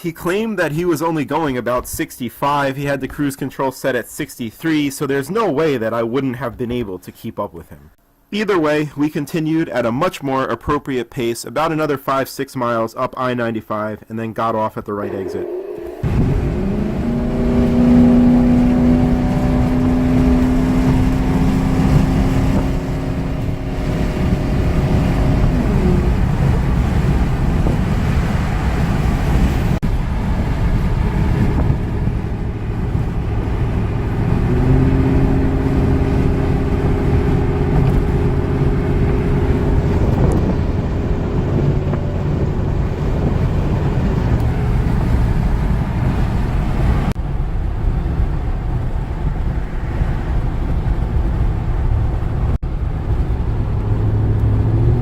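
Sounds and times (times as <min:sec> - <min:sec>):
steady droning tone: 0:15.0 - 0:21.6, 0:35.0 - 0:42.9
road noise at highway speed: 0:15.0 - 0:55.0.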